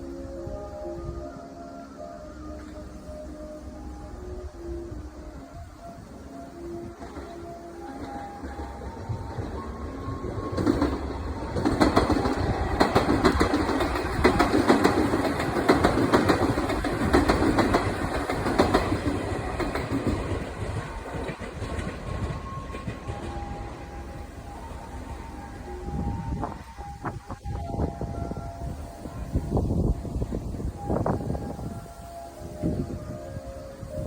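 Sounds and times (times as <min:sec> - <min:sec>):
electric train passing: 0:00.0 - 0:34.0
wheels clacking over rail joints: 0:06.4 - 0:31.6.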